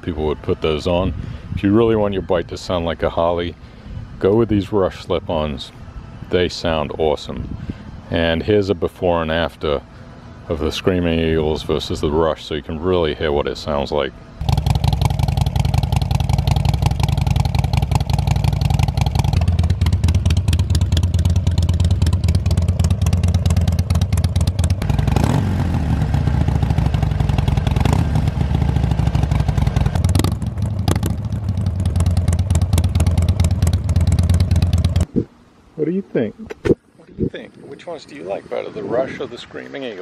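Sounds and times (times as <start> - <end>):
motorcycle exhaust running: 14.4 - 35.3.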